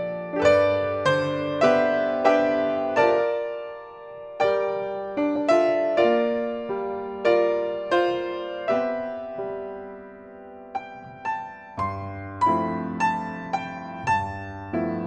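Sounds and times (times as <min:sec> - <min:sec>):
slow quiet piano music: 0:00.0 - 0:15.0.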